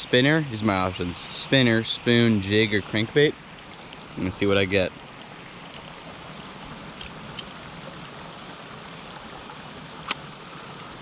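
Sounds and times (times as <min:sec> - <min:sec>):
creek water running: 0:00.0 - 0:11.0.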